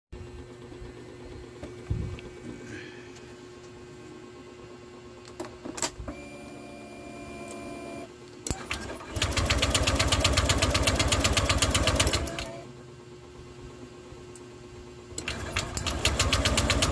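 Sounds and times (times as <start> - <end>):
steady humming tone: 0.2 - 8.7
scooter engine cranking: 15.2 - 16.9.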